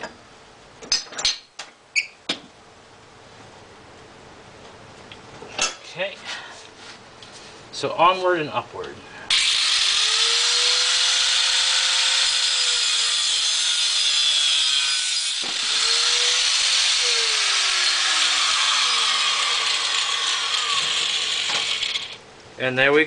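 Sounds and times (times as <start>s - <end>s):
cutting disc grinding sheet metal: 9.3s - 22.2s.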